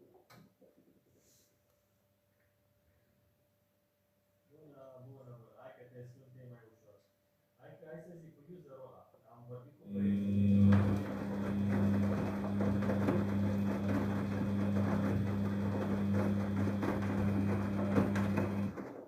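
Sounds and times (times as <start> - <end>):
washing machine hum: 9.8 - 19.0
water rushing in washing machine: 9.9 - 19.0.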